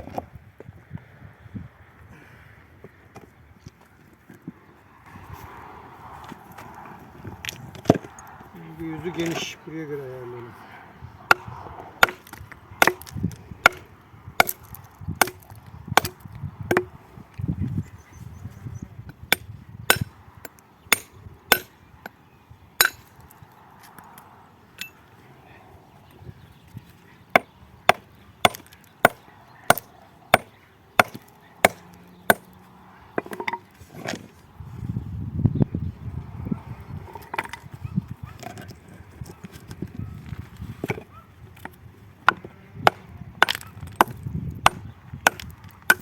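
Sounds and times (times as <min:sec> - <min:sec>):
hammer striking stone: 0:11.3 - 0:13.8, 0:14.4 - 0:16.9, 0:19.3 - 0:20.1, 0:20.9 - 0:21.7, 0:22.8 - 0:23.2, 0:27.4 - 0:32.5, 0:42.3 - 0:46.0.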